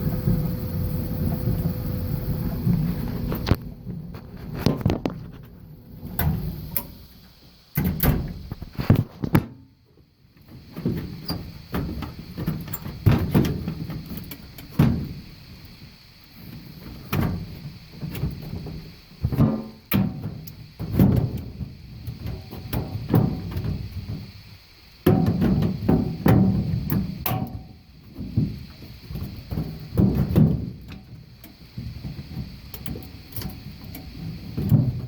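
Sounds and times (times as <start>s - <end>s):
low running rumble: 0.0s - 7.7s.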